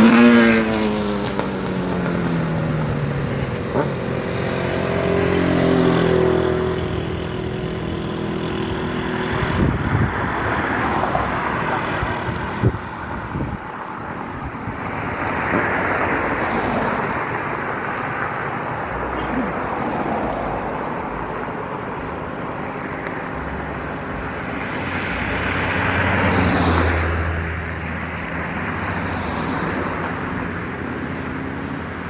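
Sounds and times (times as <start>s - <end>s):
motorcycle engine passing by: 0.0s - 13.6s
traffic noise: 0.0s - 32.0s.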